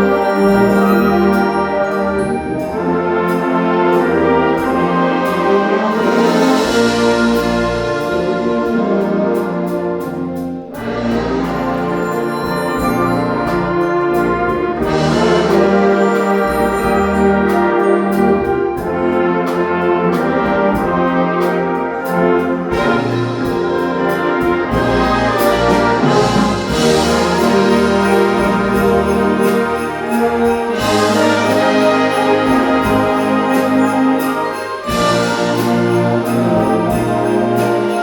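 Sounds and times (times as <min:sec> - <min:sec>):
brass chords: 0:00.0 - 0:38.0
concert band playing: 0:00.0 - 0:38.0
percussion strokes: 0:00.0 - 0:38.0.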